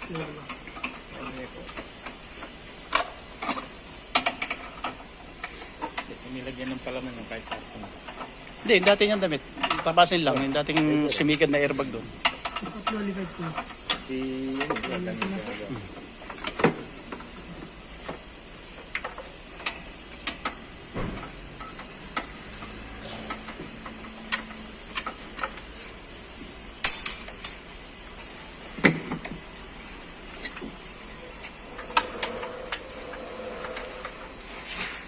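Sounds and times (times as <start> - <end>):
tools and car parts clinking: 0.0 - 15.3, 16.0 - 25.7, 26.8 - 27.7.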